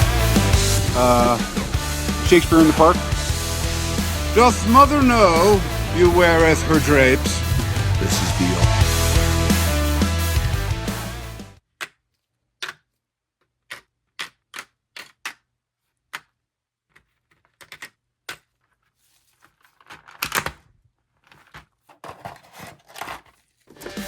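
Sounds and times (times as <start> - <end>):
packaging rustling and scraping: 18.5 - 20.2, 21.0 - 24.0.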